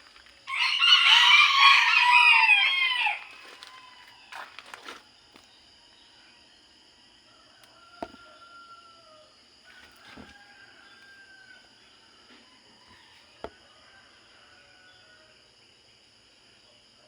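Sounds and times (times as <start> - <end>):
faint rooster crows: 0.4 - 5.0, 7.1 - 15.7.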